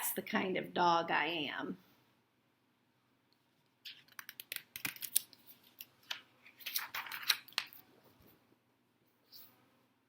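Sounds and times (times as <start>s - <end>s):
book pages turning: 3.8s - 8.3s.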